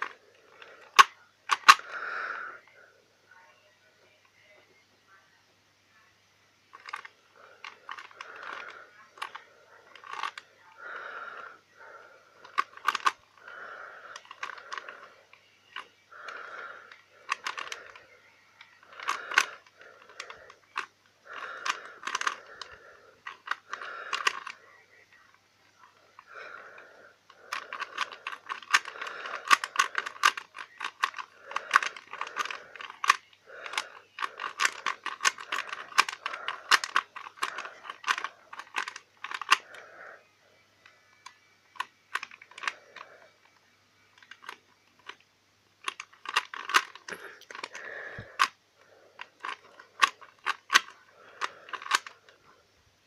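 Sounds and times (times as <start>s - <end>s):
puzzle cube layers clicking: 0.0s - 2.0s, 6.7s - 10.4s, 12.4s - 15.1s, 15.7s - 18.1s, 18.8s - 24.6s, 25.9s - 40.0s, 41.2s - 43.2s, 45.8s - 48.6s, 49.2s - 52.4s.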